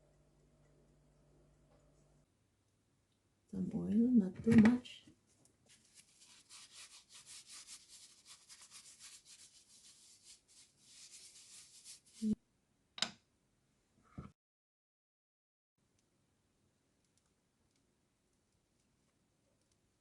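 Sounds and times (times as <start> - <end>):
rubbing oil in a pan: 5.7 - 12.4.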